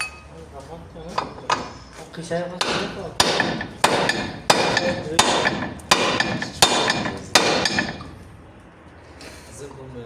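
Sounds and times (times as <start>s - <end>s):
hammer striking steel: 1.2s - 1.9s, 2.6s - 8.2s.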